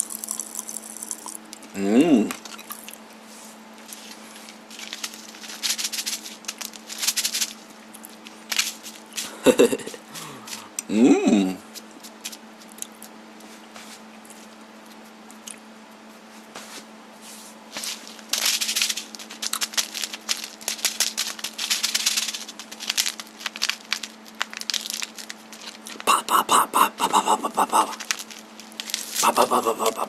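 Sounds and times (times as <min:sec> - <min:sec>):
steady low hum: 0:00.0 - 0:30.0
wrapper crinkling: 0:03.8 - 0:10.6, 0:17.7 - 0:26.1, 0:27.6 - 0:30.0.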